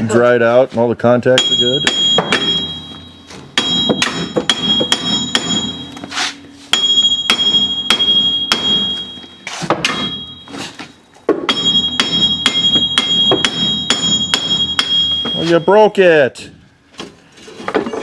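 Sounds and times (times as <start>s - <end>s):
hammer striking steel: 1.4s - 15.8s.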